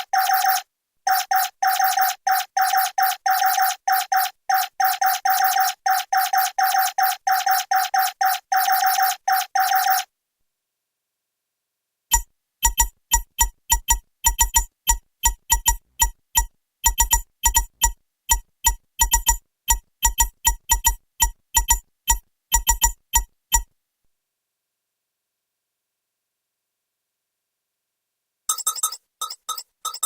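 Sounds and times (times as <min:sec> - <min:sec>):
electronic typing blips: 0:00.0 - 0:10.1, 0:12.1 - 0:23.6, 0:28.5 - 0:30.0.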